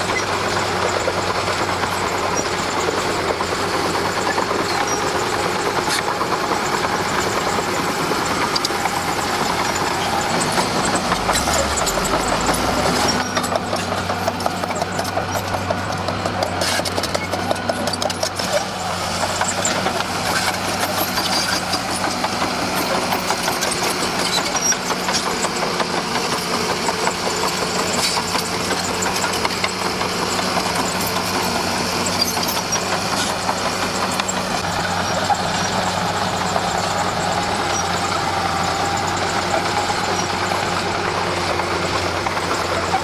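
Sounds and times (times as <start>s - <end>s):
bulldozer diesel engine: 0.0s - 43.0s
rapid metallic clatter: 0.0s - 43.0s
high whine: 8.6s - 14.4s.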